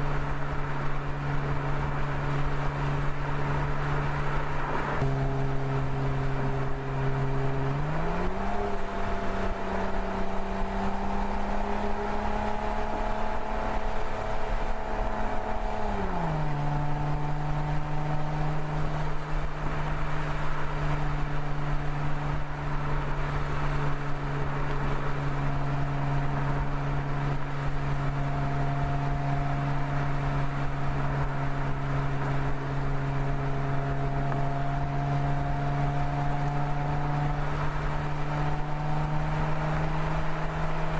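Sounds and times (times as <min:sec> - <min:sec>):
car engine cruising: 0:00.0 - 0:40.9.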